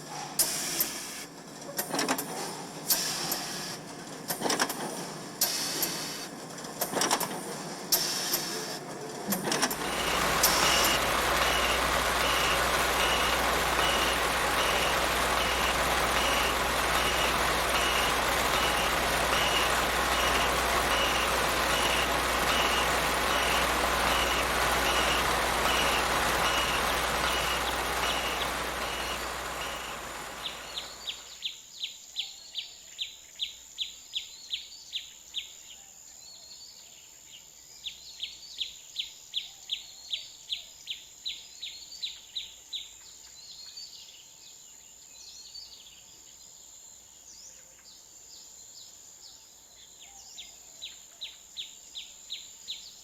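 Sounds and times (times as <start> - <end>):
heavy vehicle running: 0.0 - 31.3
steady high tone: 9.8 - 31.1
reversing alarm beeping: 9.8 - 31.2.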